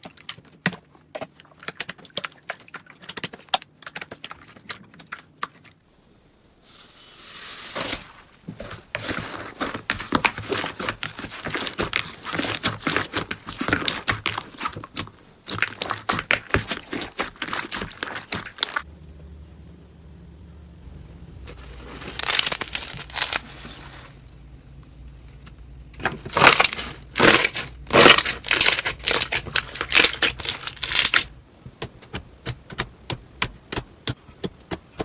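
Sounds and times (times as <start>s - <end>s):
low hum: 18.8s - 27.2s
slime crackling when squeezed: 26.3s - 31.3s.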